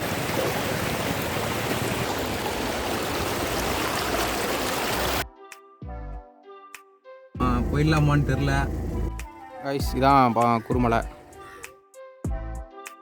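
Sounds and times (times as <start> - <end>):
stream water rushing: 0.0 - 5.2.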